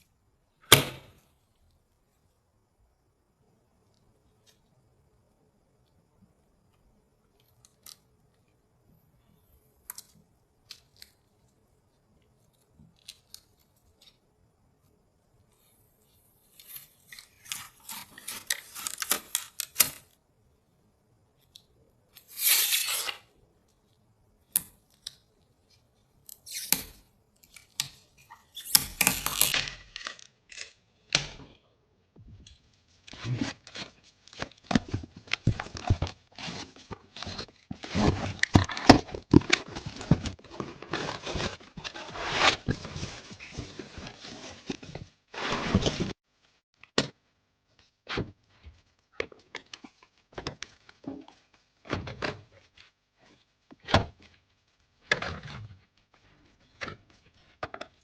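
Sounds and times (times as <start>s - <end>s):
packaging crinkling and tearing: 16.6s - 20.0s, 28.5s - 30.6s.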